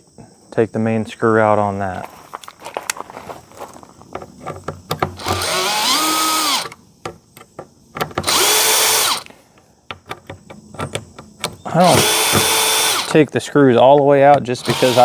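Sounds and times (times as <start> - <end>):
power drill motor: 5.2 - 6.8, 8.2 - 9.3, 11.8 - 13.1, 14.6 - 15.0.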